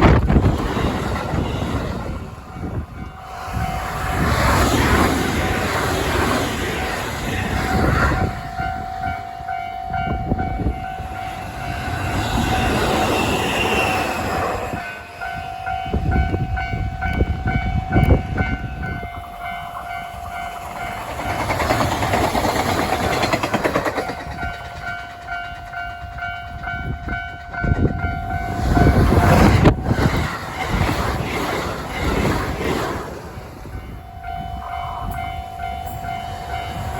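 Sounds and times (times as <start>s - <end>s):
level crossing warning bell ringing: 8.2s - 21.4s, 24.1s - 29.2s, 33.8s - 36.9s
train wheels clattering over rails: 19.2s - 33.9s.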